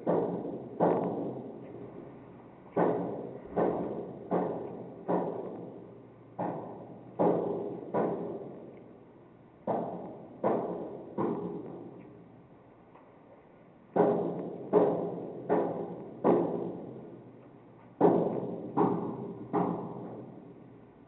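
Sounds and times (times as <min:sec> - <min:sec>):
heavy banging on pipe: 0:00.0 - 0:01.6, 0:02.7 - 0:05.8, 0:06.4 - 0:08.6, 0:09.6 - 0:12.0, 0:13.9 - 0:17.1, 0:18.0 - 0:20.4.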